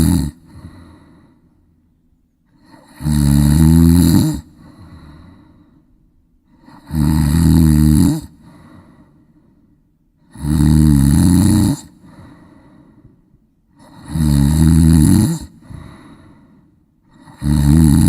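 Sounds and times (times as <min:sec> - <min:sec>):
child snoring: 0:00.0 - 0:01.3, 0:02.5 - 0:05.5, 0:06.5 - 0:09.0, 0:10.2 - 0:12.8, 0:13.7 - 0:16.5, 0:17.1 - 0:18.0
faint breathing: 0:00.0 - 0:03.0, 0:04.4 - 0:06.9, 0:08.2 - 0:10.4, 0:11.9 - 0:14.1, 0:15.4 - 0:17.4.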